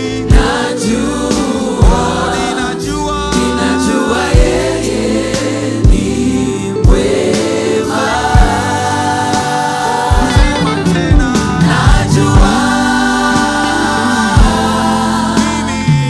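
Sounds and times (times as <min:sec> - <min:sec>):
choir singing with a band: 0:00.0 - 0:16.0
low drum beats: 0:01.8 - 0:02.3, 0:04.4 - 0:04.8, 0:08.4 - 0:08.8, 0:10.1 - 0:16.0.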